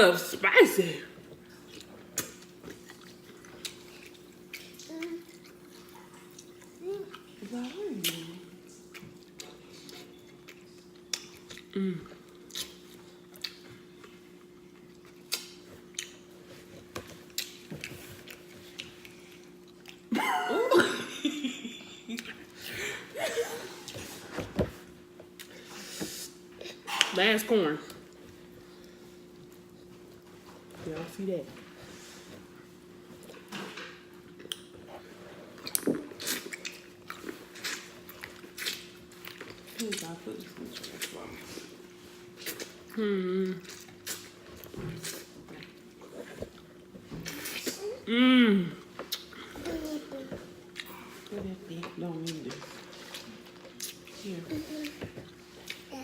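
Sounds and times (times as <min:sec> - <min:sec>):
faint steady hum: 0:00.0 - 0:56.0
chewing with lip smacks: 0:01.3 - 0:20.1, 0:33.1 - 0:48.0, 0:48.9 - 0:49.6, 0:50.6 - 0:51.3, 0:52.2 - 0:55.9
lip smacking: 0:49.1 - 0:49.4.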